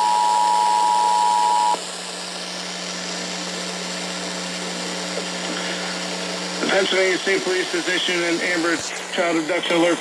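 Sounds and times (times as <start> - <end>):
two-tone attention signal: 0.0 - 1.8
steady hiss: 1.8 - 10.0.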